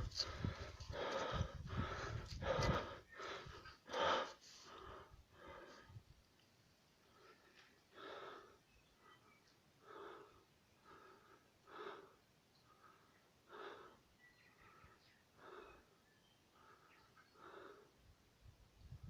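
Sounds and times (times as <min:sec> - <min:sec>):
faint slow breathing: 0:00.0 - 0:06.1, 0:07.0 - 0:18.3.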